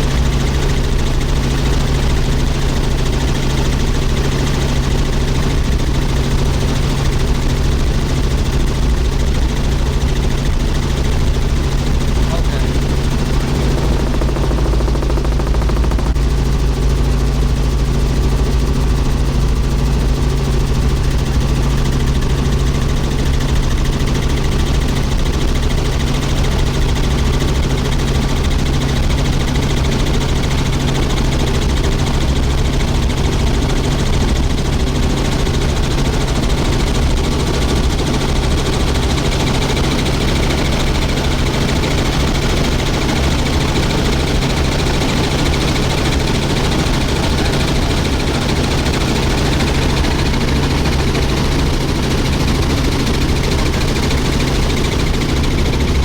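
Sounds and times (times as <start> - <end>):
helicopter engine and rotor drone: 0.0 - 56.0
helicopter blade chop: 10.1 - 17.7, 41.6 - 56.0.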